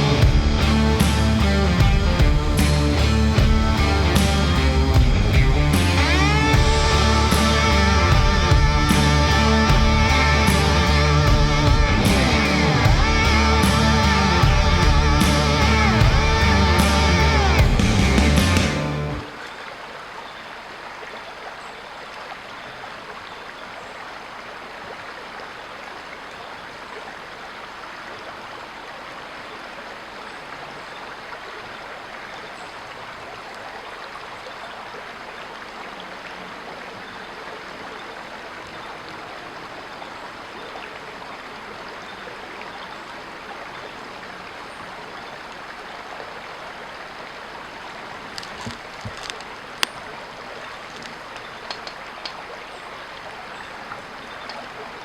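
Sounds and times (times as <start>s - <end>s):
creek water running: 0.0s - 55.0s
sharp clicks: 50.8s - 52.4s.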